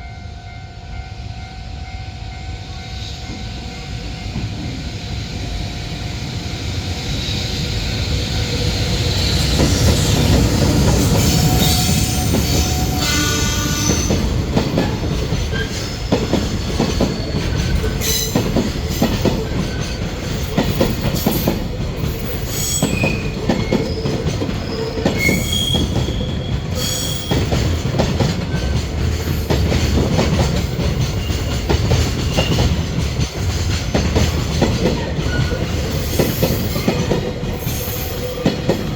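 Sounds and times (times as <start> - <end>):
freight train wheels rumbling: 0.0 - 38.9
high wheel squeals: 7.2 - 14.4, 22.2 - 27.6.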